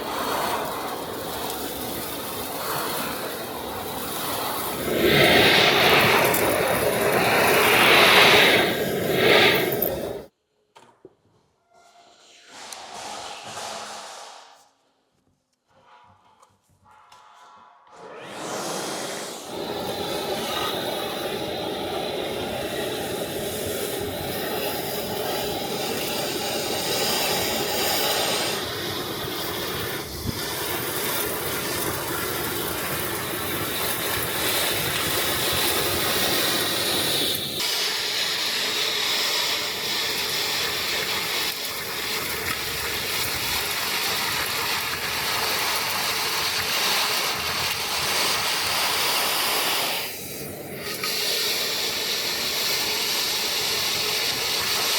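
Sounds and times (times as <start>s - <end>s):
air rushing through hose: 0.0s - 10.3s, 11.8s - 14.9s, 17.9s - 54.9s
industrial vacuum blower running: 18.0s - 42.6s.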